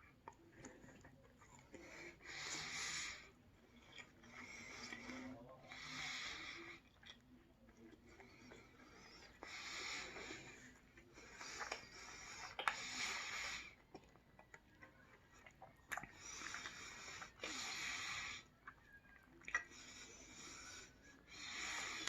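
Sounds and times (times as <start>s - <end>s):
breaths through the nose: 0.5s - 7.0s, 8.0s - 13.9s, 16.0s - 18.6s, 19.5s - 22.0s
mouth clicks while chewing: 6.7s - 17.6s, 18.6s - 20.1s.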